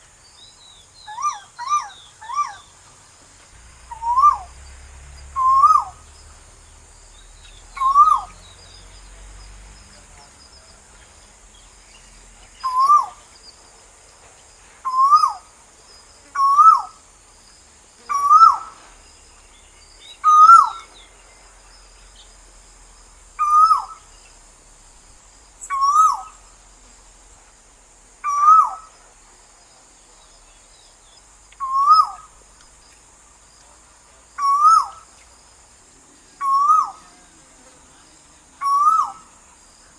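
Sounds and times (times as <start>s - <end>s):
bird calling: 0.0s - 3.2s, 3.8s - 9.2s, 9.9s - 13.6s, 14.8s - 15.6s, 16.2s - 17.1s, 18.0s - 22.3s, 23.4s - 24.4s, 25.6s - 26.6s, 28.2s - 29.0s, 31.6s - 33.0s, 34.3s - 35.4s, 36.2s - 39.9s
faint high hiss: 0.0s - 39.9s.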